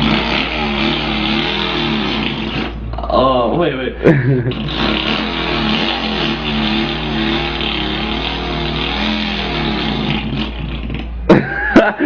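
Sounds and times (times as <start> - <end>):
man imitating engine with voice: 0.0 - 3.6, 4.5 - 10.5.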